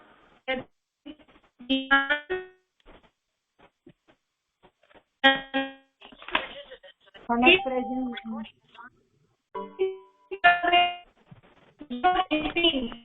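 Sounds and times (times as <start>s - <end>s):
keyboard notes: 7.4s - 8.4s.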